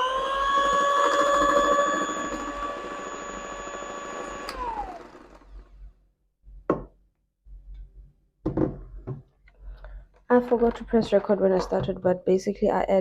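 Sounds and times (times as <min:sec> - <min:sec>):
electric mixer whining: 0:00.0 - 0:05.8.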